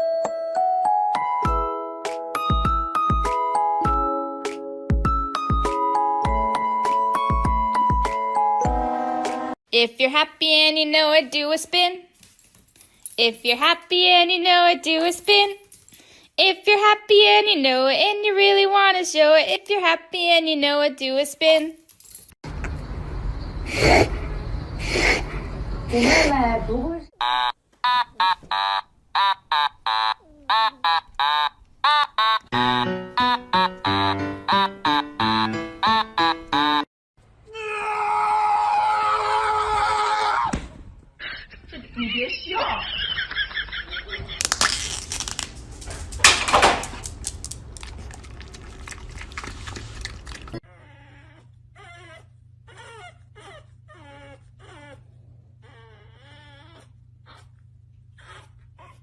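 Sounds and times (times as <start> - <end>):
dog whimpering: 50.6 - 59.0.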